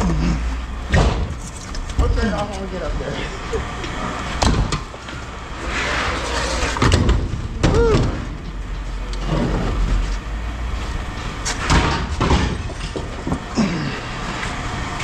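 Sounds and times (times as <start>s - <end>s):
machine engine rumble: 0.0s - 15.0s
metallic squeal: 5.4s - 6.9s
scrap metal clanking: 5.6s - 7.4s.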